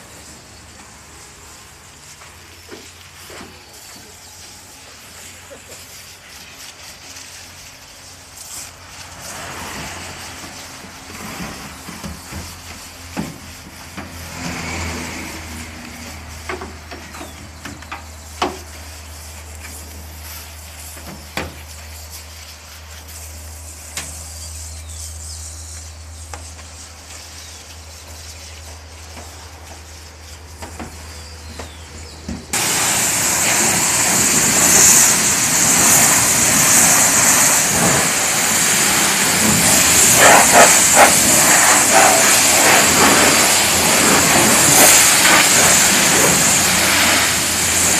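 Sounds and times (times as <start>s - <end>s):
rushing hiss of water: 0.0s - 30.5s, 32.5s - 47.9s
washing machine humming: 31.3s - 47.9s.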